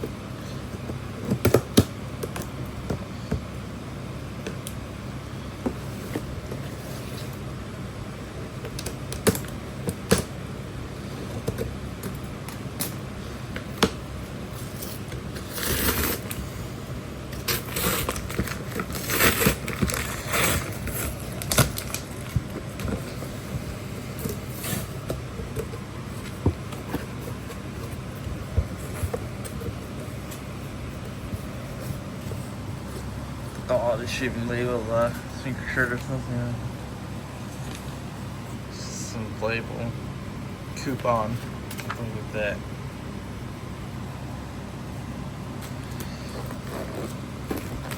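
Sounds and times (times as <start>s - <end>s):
steady low hum: 0.0s - 47.9s
tape and cardboard tearing: 14.6s - 16.4s, 17.3s - 23.3s, 24.2s - 28.0s, 45.6s - 47.9s
cardboard box clicks and knocks: 17.4s - 23.4s.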